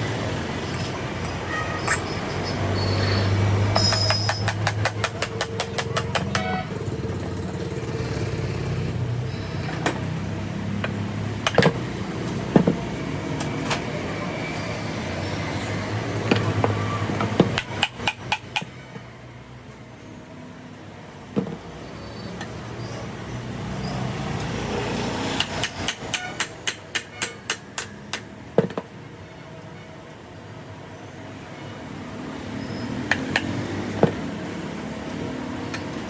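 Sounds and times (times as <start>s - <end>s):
metallic taps and knocks: 3.7s - 6.6s, 10.8s - 11.8s, 16.3s - 18.8s, 25.4s - 28.9s.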